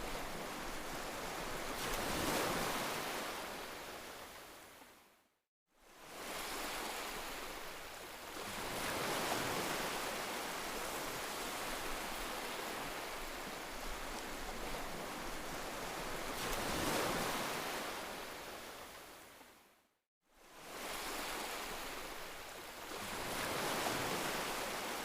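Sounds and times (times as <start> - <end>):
ocean waves breaking: 6.0 - 19.2, 20.6 - 25.0.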